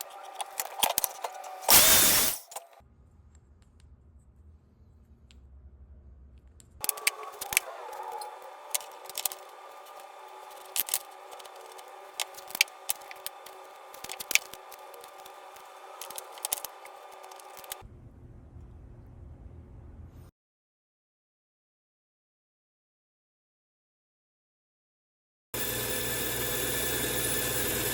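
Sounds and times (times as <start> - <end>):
small power tool motor running: 6.8 - 17.8, 25.6 - 27.9.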